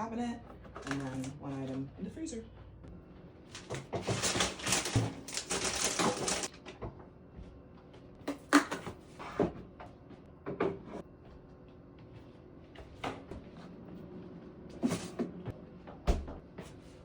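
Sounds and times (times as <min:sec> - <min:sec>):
packaging rustling: 0:03.5 - 0:06.5.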